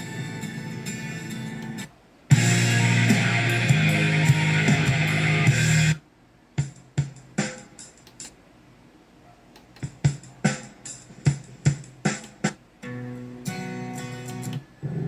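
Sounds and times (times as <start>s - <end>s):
sustained music: 0.0s - 6.0s.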